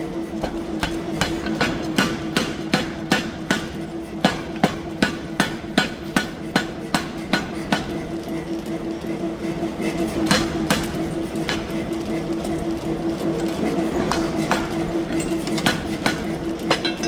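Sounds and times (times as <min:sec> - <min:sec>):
steady machine hum: 0:00.0 - 0:17.0
power hammer striking hot steel: 0:00.4 - 0:08.2, 0:10.0 - 0:12.0, 0:14.0 - 0:17.0.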